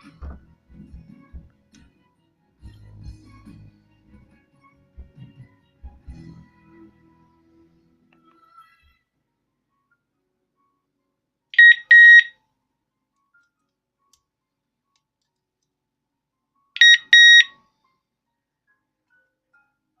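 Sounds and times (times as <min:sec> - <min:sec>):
alarm siren beeping: 0:11.6 - 0:12.3, 0:16.8 - 0:17.5.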